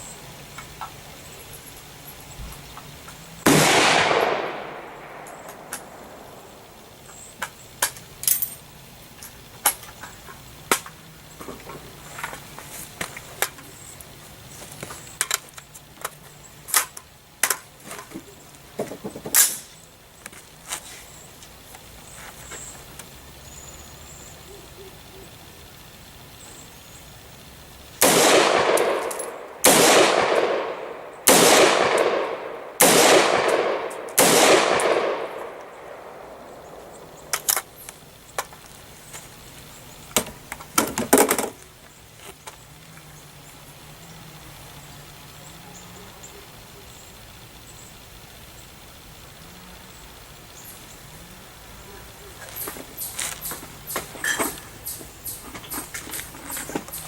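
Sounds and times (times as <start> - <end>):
pistol shots with echo: 3.5 - 6.7, 28.0 - 37.5.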